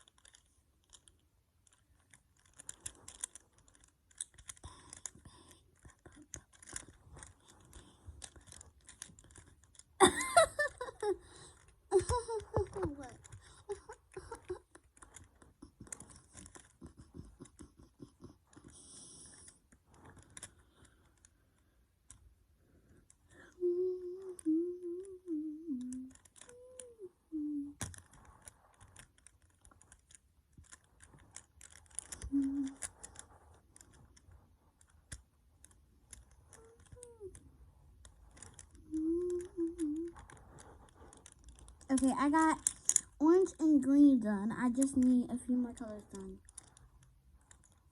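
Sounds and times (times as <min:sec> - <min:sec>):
puzzle cube clicking: 0:00.0 - 0:47.9
person humming: 0:23.4 - 0:27.8, 0:32.3 - 0:32.8, 0:38.8 - 0:40.3.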